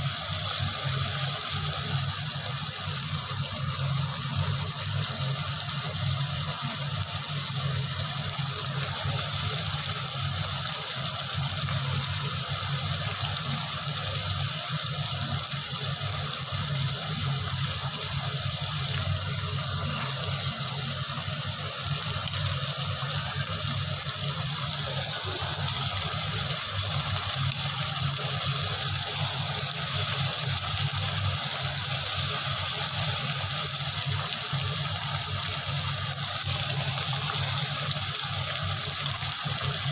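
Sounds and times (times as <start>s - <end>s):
water rushing: 22.9s - 31.8s.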